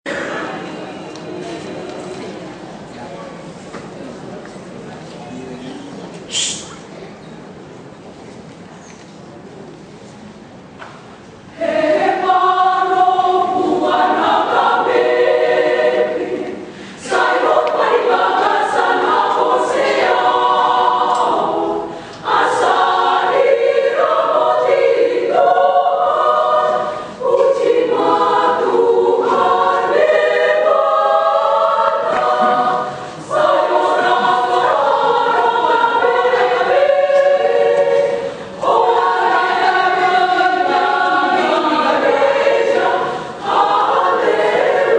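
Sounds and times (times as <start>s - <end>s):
women's choir singing: 11.5s - 44.9s.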